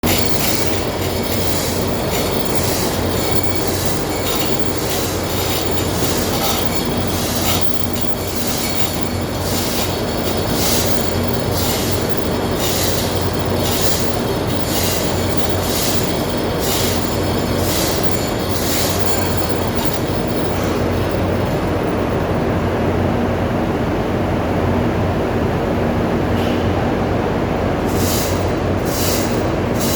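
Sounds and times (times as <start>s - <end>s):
sharp metallic clicks: 0.0s - 22.5s
engine-room machinery noise: 0.0s - 29.9s.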